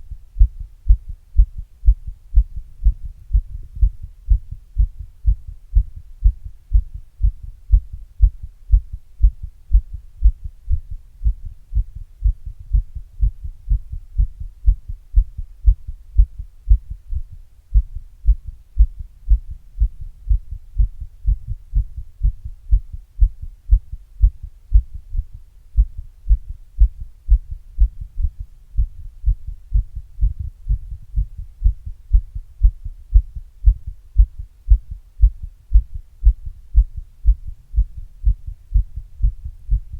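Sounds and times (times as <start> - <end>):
muffled heartbeat thumps: 0.0 - 39.9.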